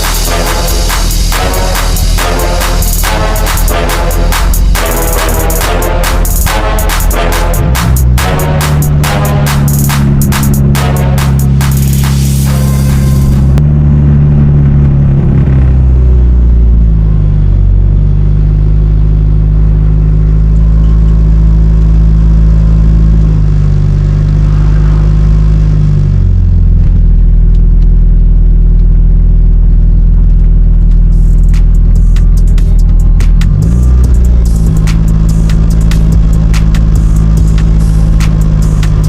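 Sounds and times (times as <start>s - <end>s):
loud car engine drone: 0.0s - 39.0s.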